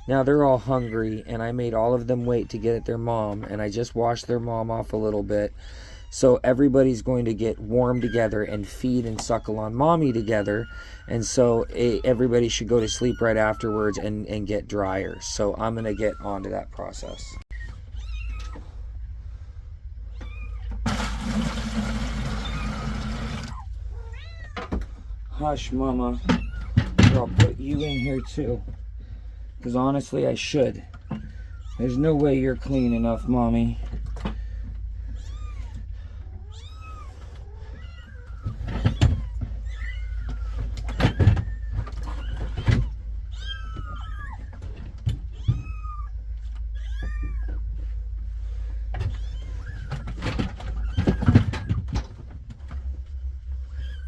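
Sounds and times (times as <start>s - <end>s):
steady low hum: 0.0s - 20.9s, 23.5s - 54.0s
kittens mewing: 7.7s - 18.7s, 25.4s - 28.9s, 30.2s - 47.7s
cat meowing: 20.1s - 20.7s, 23.5s - 24.6s, 27.6s - 28.6s, 35.1s - 35.8s, 36.4s - 44.4s, 45.3s - 47.6s
water running: 20.9s - 23.5s.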